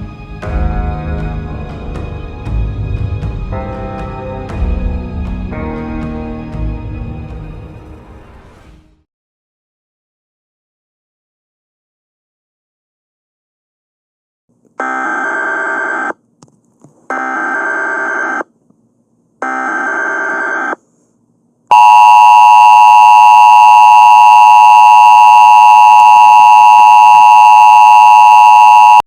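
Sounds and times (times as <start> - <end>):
two-tone attention signal: 21.7 - 29.0.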